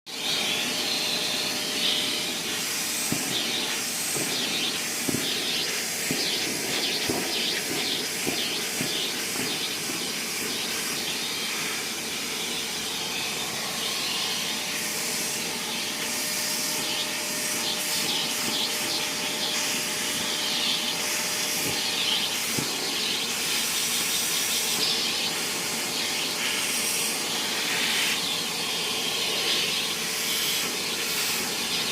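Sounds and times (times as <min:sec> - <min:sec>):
faint motor hum: 0:00.1 - 0:31.9
vacuum cleaner suction hiss: 0:00.1 - 0:31.9.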